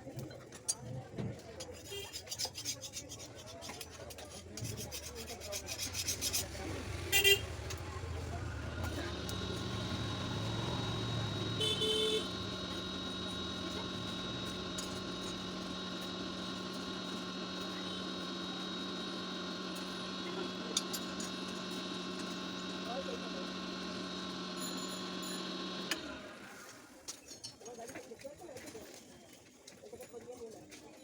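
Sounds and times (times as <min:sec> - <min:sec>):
steady machine hum: 0:05.6 - 0:26.7
short horn-like toots: 0:11.4 - 0:12.4.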